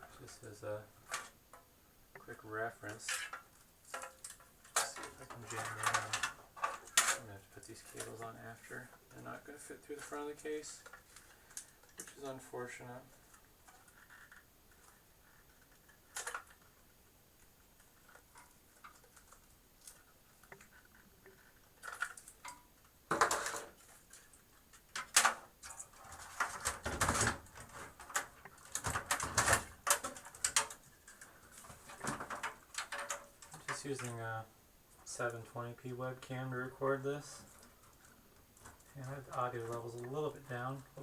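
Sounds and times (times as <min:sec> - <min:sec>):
clattering knocks and rustles: 0:03.0 - 0:08.3, 0:17.6 - 0:34.2.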